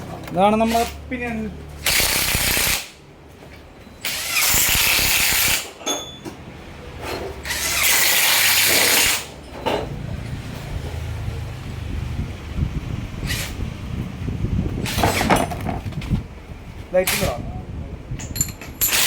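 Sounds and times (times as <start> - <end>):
rattling hissing mechanical bursts: 0.3 - 1.2, 1.8 - 3.0, 4.0 - 5.8, 7.4 - 9.4, 16.9 - 17.6.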